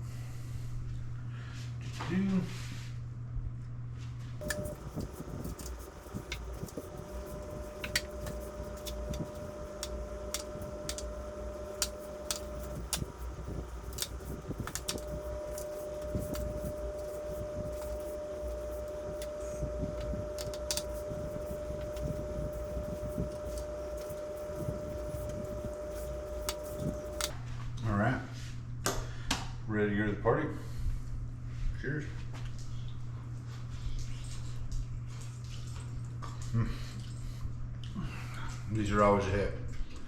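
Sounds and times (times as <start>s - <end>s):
steady hum: 4.4s - 27.3s.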